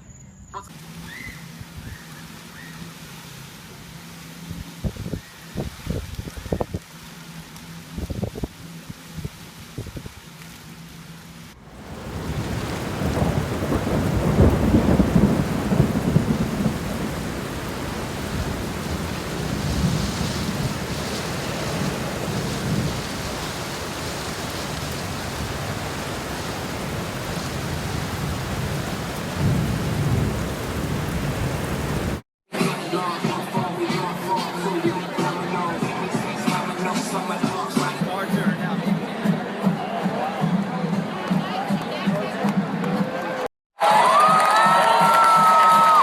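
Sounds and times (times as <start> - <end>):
rain falling: 2.1 - 32.2
rolling thunder: 11.6 - 32.2.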